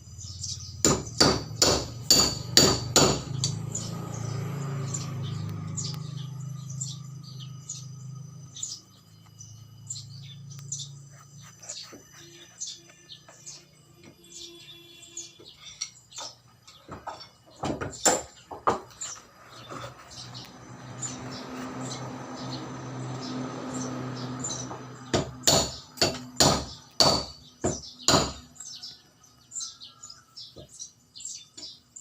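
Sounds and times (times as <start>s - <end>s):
birds chirping: 0.0s - 32.0s
sharp knocks: 0.8s - 3.8s, 16.2s - 19.1s, 24.5s - 28.5s.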